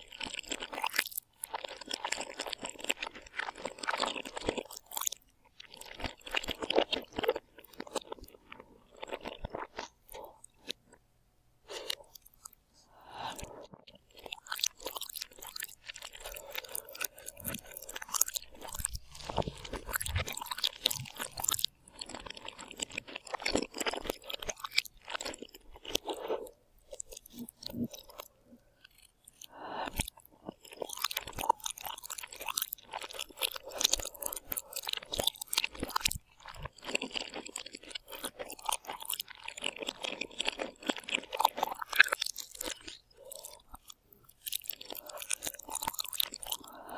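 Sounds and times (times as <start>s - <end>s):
person chewing crisp food: 0.0s - 11.0s, 11.6s - 46.9s.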